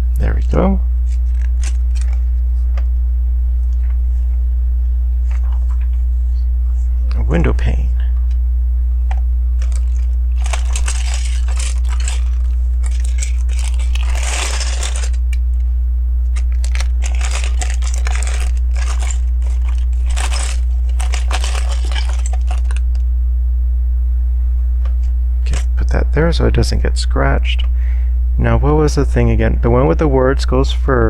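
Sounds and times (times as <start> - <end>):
low electrical hum: 0.0 - 31.0
plastic pieces rustling and clicking: 1.0 - 2.2, 9.6 - 15.4, 16.3 - 23.0.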